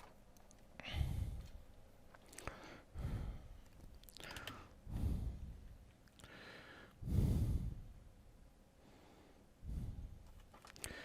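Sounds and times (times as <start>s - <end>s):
person breathing heavily: 0.8s - 1.7s, 2.3s - 8.1s, 8.8s - 10.2s, 10.8s - 11.0s.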